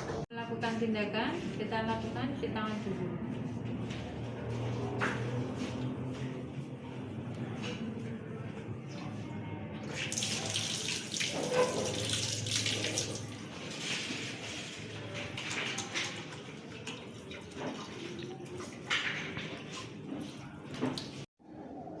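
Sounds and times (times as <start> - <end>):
tap water running into sink: 9.8 - 13.5
hands washing under water: 9.8 - 21.2.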